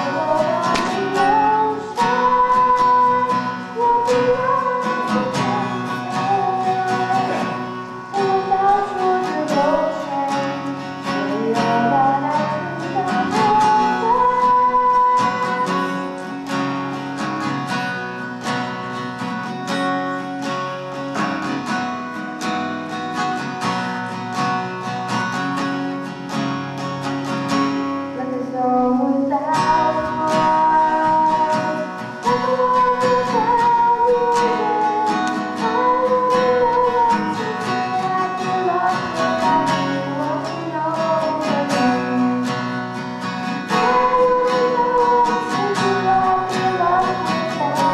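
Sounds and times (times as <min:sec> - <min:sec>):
person singing: 0:00.0 - 0:17.9, 0:28.1 - 0:47.9
strummed acoustic guitar: 0:00.0 - 0:47.9.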